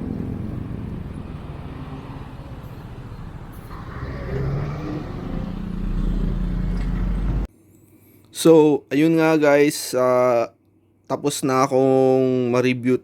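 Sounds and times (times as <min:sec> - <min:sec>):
road noise: 0:00.0 - 0:07.5
vehicle engine running: 0:00.0 - 0:07.5.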